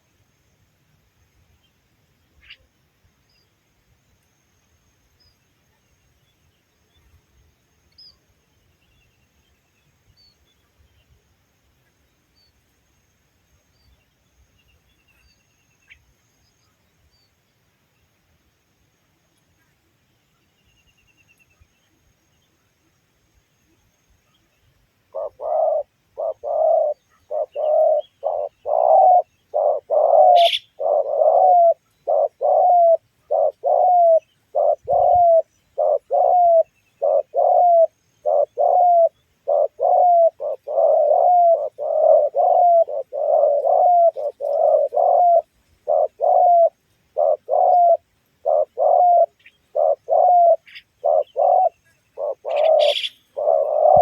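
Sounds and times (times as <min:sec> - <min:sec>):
dove cooing: 0:25.1 - 0:54.0.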